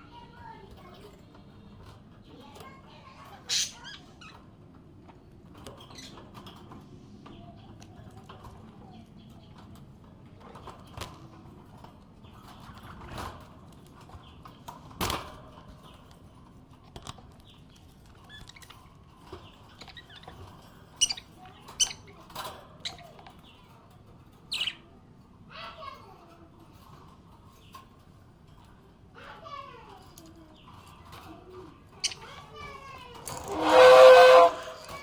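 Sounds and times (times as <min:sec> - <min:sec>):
budgerigar chirping: 0:24.5 - 0:24.8.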